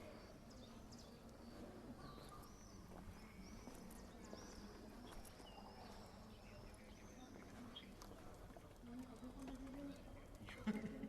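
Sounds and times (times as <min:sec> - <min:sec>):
small birds chirping: 0:00.0 - 0:08.5.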